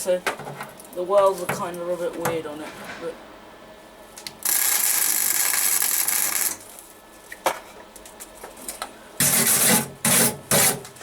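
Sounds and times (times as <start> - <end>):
arc welder crackling hiss: 4.4 - 6.8.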